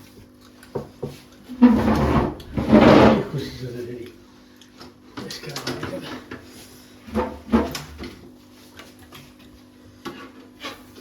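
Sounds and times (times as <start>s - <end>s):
dishes and utensils clattering: 1.6s - 3.6s
steady low hum: 1.7s - 4.7s.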